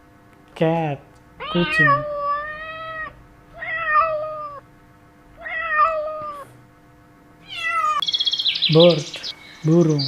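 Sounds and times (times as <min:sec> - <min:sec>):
cat meowing: 0:01.4 - 0:04.6, 0:05.4 - 0:06.5, 0:07.4 - 0:08.0.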